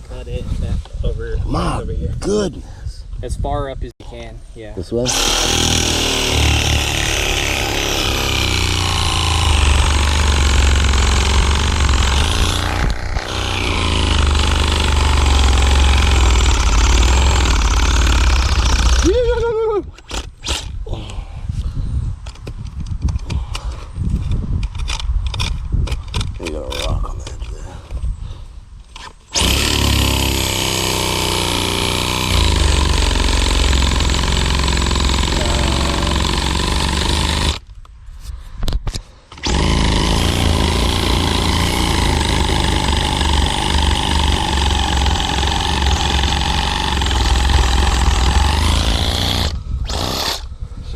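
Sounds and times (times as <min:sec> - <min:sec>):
reciprocating saw cutting roots: 0:04.9 - 0:20.9, 0:29.0 - 0:37.7, 0:39.3 - 0:50.6
motor-driven tool humming: 0:05.1 - 0:19.2, 0:29.3 - 0:37.6, 0:39.3 - 0:50.5.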